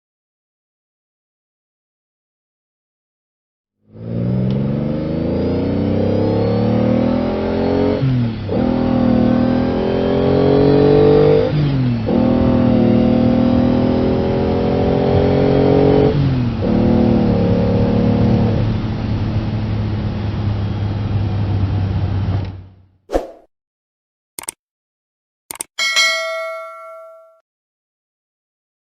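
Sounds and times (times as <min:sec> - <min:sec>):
car engine accelerating: 0:03.9 - 0:22.5.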